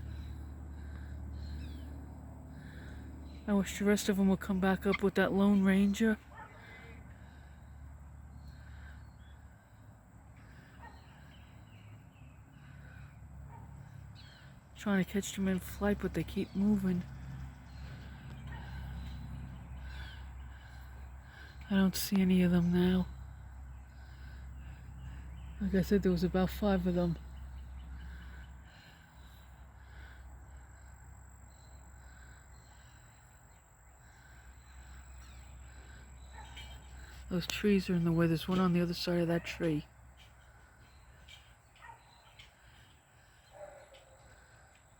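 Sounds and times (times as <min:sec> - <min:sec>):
birds calling: 0:00.0 - 0:44.9
steady low rumble: 0:11.4 - 0:38.4
distant animal calls: 0:15.8 - 0:21.8, 0:22.7 - 0:37.3.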